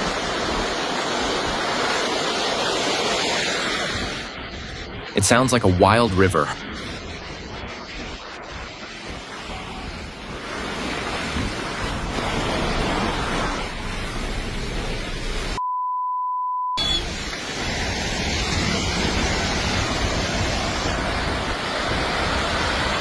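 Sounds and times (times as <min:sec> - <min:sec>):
steady rushing noise: 0:00.0 - 0:15.6, 0:16.8 - 0:23.0
censor bleep: 0:15.6 - 0:17.2.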